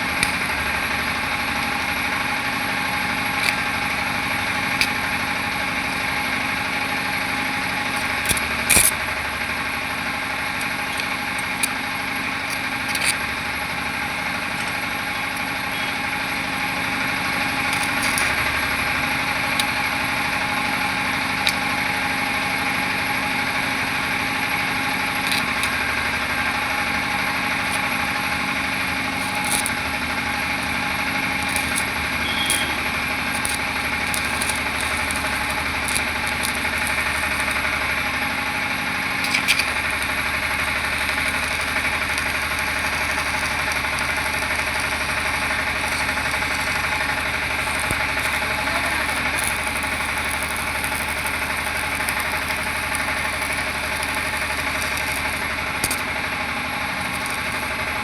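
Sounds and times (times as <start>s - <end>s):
sharp welding clicks: 0.0s - 58.0s
welding drone: 0.0s - 58.0s.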